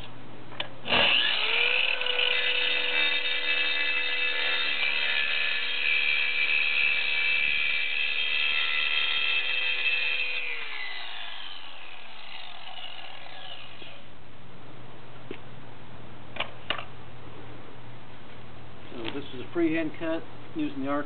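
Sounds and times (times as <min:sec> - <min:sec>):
circular saw whining: 0:00.8 - 0:14.1.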